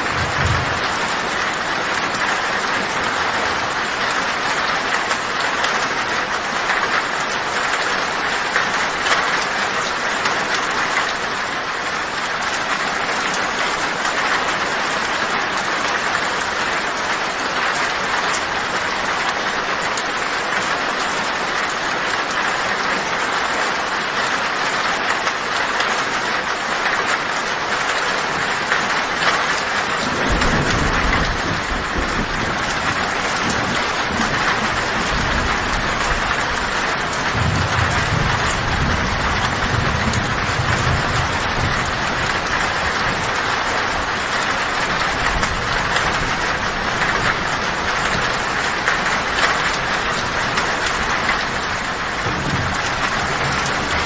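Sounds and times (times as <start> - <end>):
low rumble of thunder: 0.0 - 3.4, 30.0 - 43.4, 50.3 - 54.0
heavy rain on a tin roof: 0.0 - 54.0.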